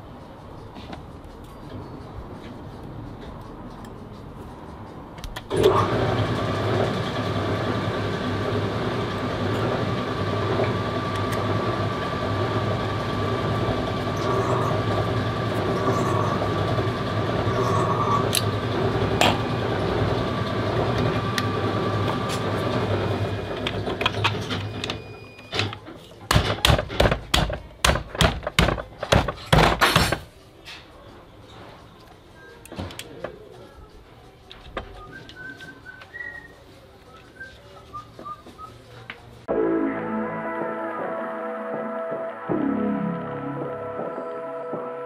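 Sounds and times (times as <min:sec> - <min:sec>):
alternator whining on test bench: 0:05.6 - 0:25.4.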